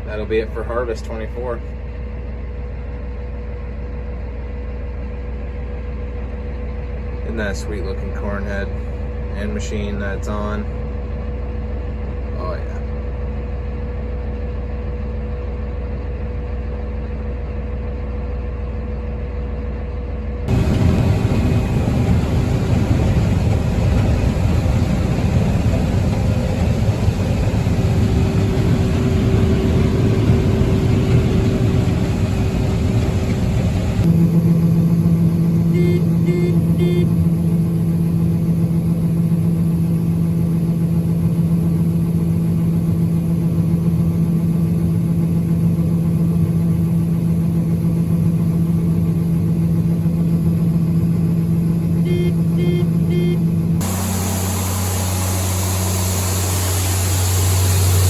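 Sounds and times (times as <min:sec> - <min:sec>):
heavy machinery engine running: 0:12.9 - 0:58.0
short high beeps: 0:35.8 - 0:37.1, 0:52.1 - 0:53.4.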